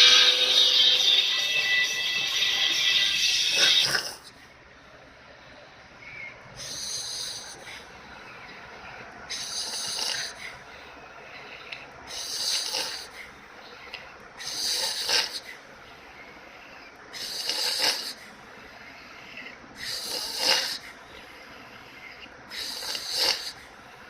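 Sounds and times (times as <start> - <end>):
person snoring: 3.2 - 4.4, 9.3 - 10.5, 12.1 - 13.2, 14.4 - 15.5, 17.2 - 18.2, 19.8 - 20.9, 22.5 - 23.6.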